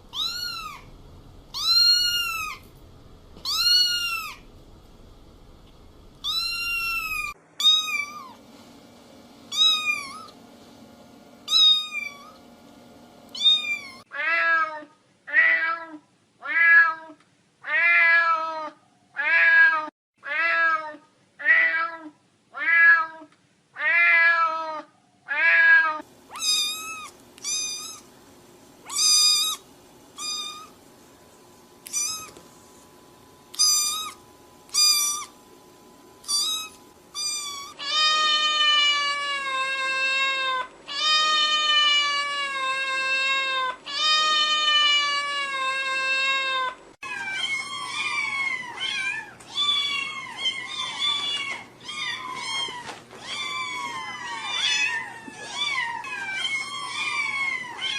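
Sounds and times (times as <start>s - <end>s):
cats meowing: 0.1s - 0.9s, 1.5s - 2.7s, 3.4s - 4.5s, 6.2s - 8.4s, 9.5s - 10.4s, 13.4s - 23.2s, 23.8s - 28.1s, 28.8s - 29.6s, 30.2s - 30.8s, 31.8s - 32.4s, 33.5s - 35.4s, 36.2s - 57.9s.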